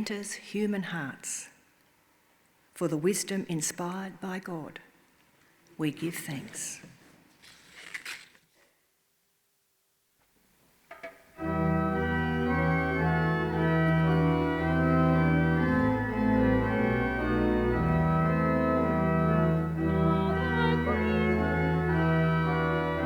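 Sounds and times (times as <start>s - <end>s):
church organ sustained chords: 11.4s - 23.0s.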